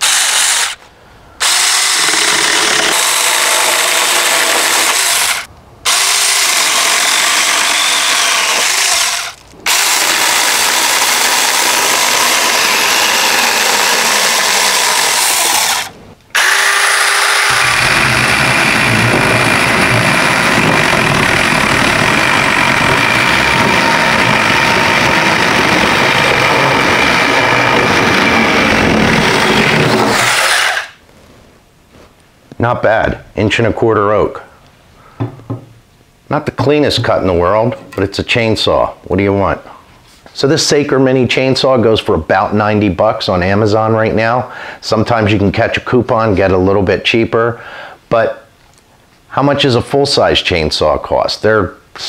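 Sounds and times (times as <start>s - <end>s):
electric chainsaw cutting branches: 0.0s - 0.8s, 1.4s - 31.0s.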